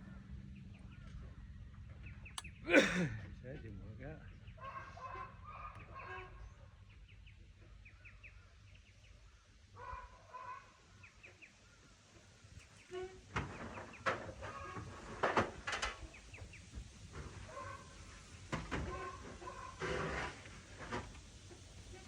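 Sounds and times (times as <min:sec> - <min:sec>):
birds chirping: 0:00.4 - 0:13.0.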